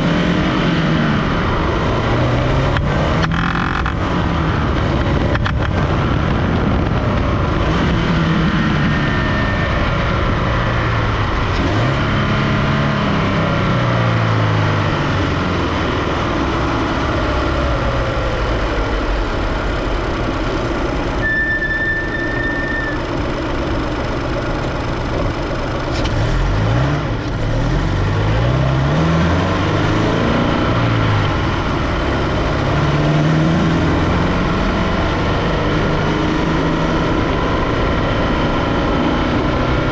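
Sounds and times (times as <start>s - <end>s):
car engine revving: 0.0s - 39.9s
high steady whistle: 21.2s - 23.0s.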